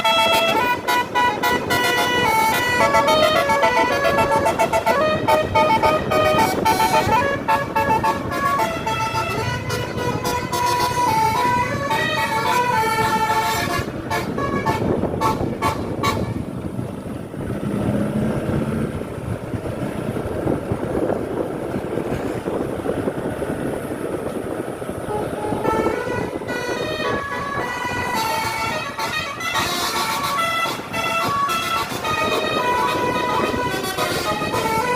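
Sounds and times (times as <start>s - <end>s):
multi-tone air horn tune: 0.0s - 16.4s, 25.0s - 34.9s
bus engine and road rumble: 0.0s - 34.9s.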